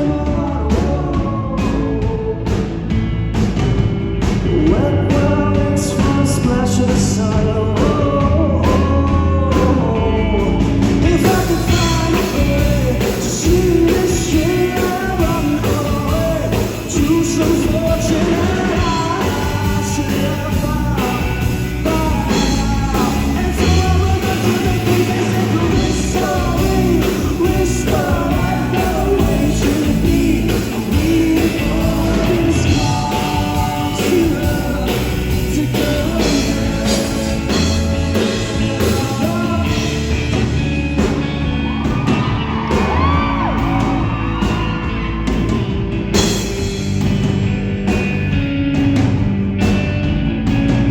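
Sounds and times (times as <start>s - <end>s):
man singing: 0.0s - 3.0s, 4.4s - 40.7s
rock band playing live: 0.0s - 50.9s.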